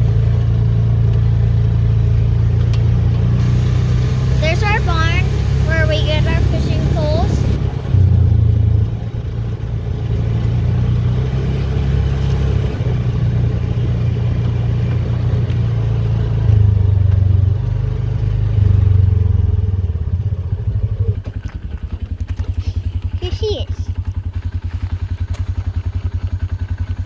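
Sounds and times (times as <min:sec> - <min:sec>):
small vehicle engine running: 0:00.0 - 0:27.0.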